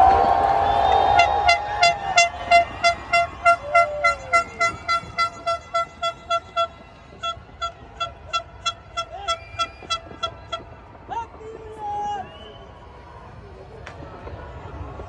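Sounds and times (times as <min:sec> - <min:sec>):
horn short beeps: 0:01.2 - 0:10.7.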